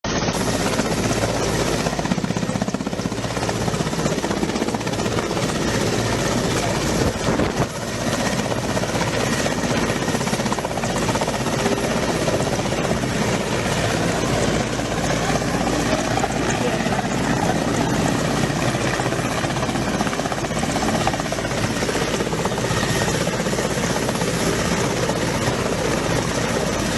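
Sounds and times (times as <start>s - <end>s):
helicopter engine whine: 0.1s - 26.9s
helicopter rotor chop: 0.1s - 26.9s.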